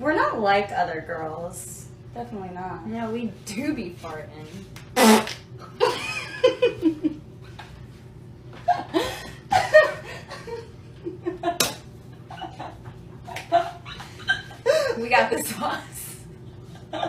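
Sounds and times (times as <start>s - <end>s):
buzzy fart: 5.0s - 5.5s.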